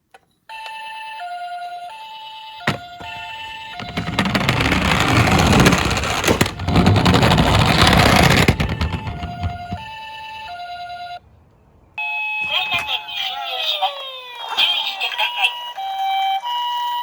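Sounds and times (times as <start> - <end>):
toy car rattling on plastic: 3.8 - 9.9
toy siren two-tone wail: 12.0 - 17.0.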